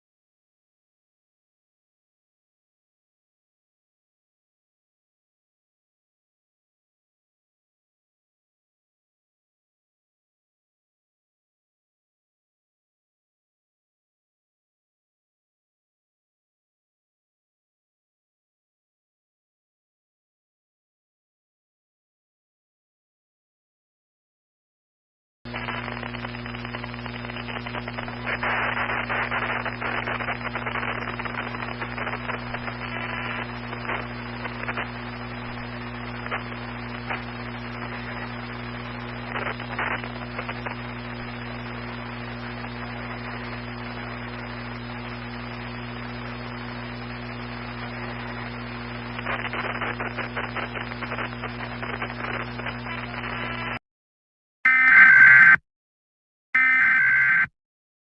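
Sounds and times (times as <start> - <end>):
crackles and pops: 25.5 - 53.8
static hiss: 25.5 - 53.8.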